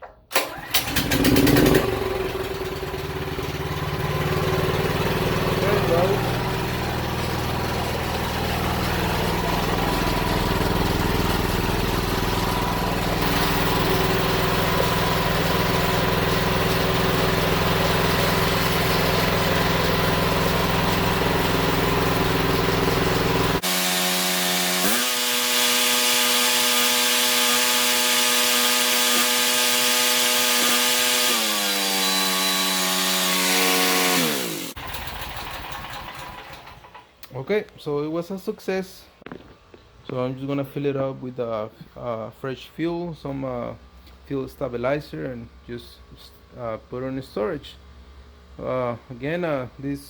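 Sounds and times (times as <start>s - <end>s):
generator engine running: 0.3s - 37.2s.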